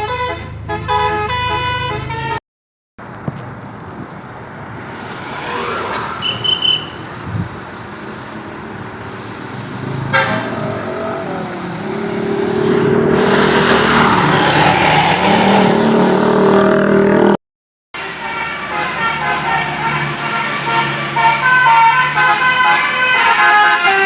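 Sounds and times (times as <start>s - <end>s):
bus engine and tyre roar: 0.0s - 2.4s, 3.0s - 17.4s, 18.0s - 24.0s
melodic bus horn: 0.0s - 2.4s, 10.1s - 10.5s, 18.0s - 24.0s.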